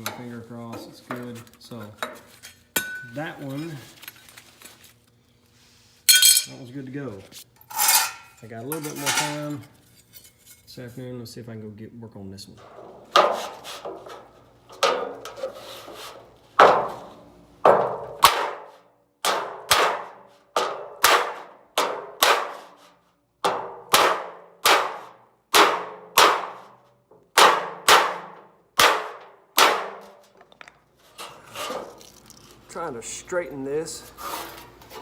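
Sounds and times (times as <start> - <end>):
wood block clanging on sheet steel: 7.7 - 9.6, 13.0 - 16.0, 16.6 - 22.8, 23.4 - 32.0.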